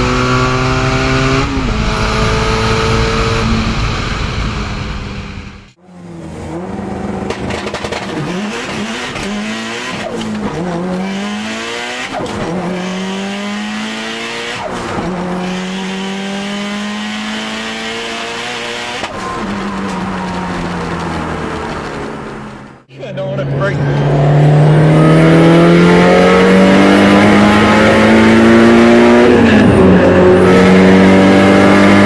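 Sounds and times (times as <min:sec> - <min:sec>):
car engine accelerating through gears: 0:00.0 - 0:32.0.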